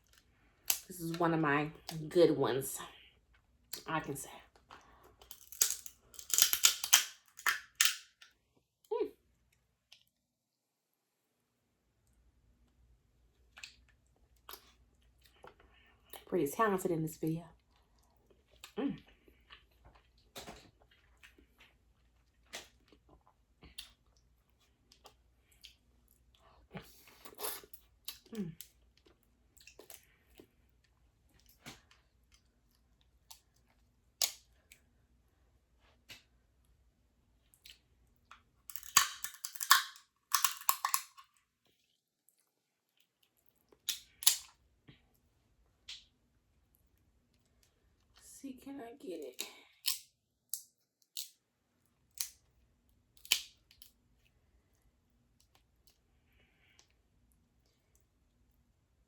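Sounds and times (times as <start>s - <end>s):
shellfish shell cracking: 0.0s - 0.9s, 5.2s - 8.3s, 38.7s - 41.3s, 43.8s - 44.5s, 49.8s - 51.4s, 53.2s - 53.9s
sharp shell clicks: 5.5s - 8.1s
quiet chewing: 12.0s - 16.3s, 17.5s - 34.9s, 37.4s - 38.5s, 53.3s - 58.7s.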